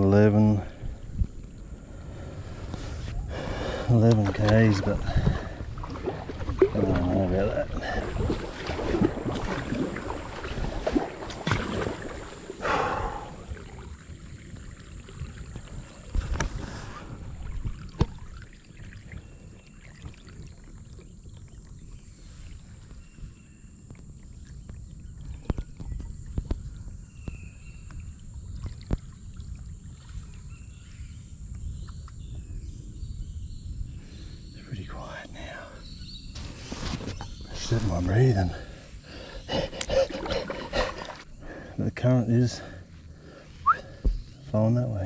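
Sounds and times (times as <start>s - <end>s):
wind rumble on microphone: 0.0s - 41.6s
paddle splashing water: 2.0s - 31.3s, 36.4s - 41.8s.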